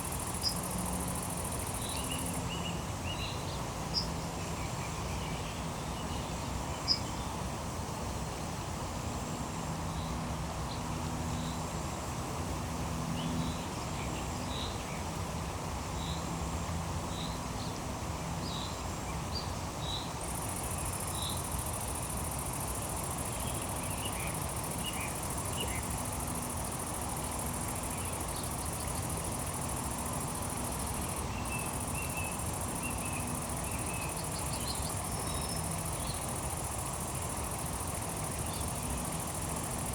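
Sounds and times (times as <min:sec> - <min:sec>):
insect trill: 0:00.0 - 0:03.3, 0:19.8 - 0:39.9
steady background hiss: 0:00.0 - 0:39.9.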